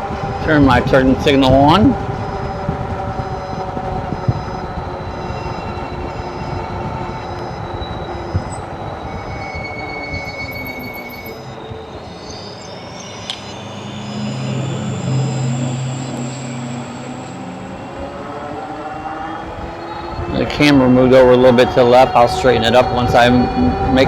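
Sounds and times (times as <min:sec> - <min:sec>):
low engine-like hum: 0:00.0 - 0:24.0
rising whine: 0:00.0 - 0:24.0
wind and tyres rushing: 0:00.0 - 0:24.0
turn signal beeping: 0:02.2 - 0:17.9.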